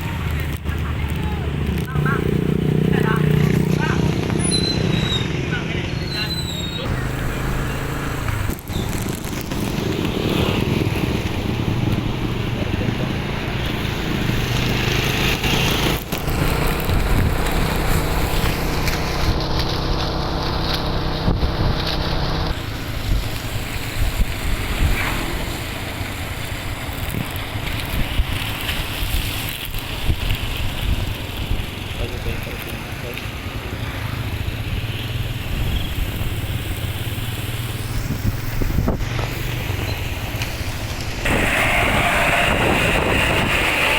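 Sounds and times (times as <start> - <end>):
storm wind buffeting microphone: 8.3 - 15.0, 15.6 - 32.5, 37.7 - 43.9
rushing hiss: 34.6 - 43.9.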